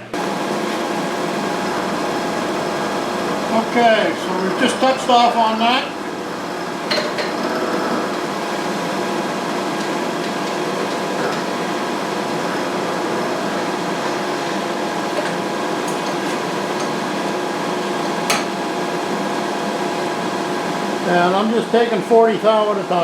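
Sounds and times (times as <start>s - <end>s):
milling machine cutting metal: 0.1s - 23.0s.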